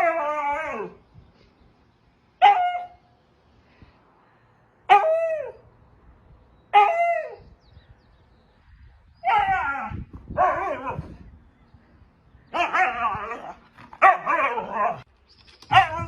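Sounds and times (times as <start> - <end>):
dog barking: 12.6 - 15.0.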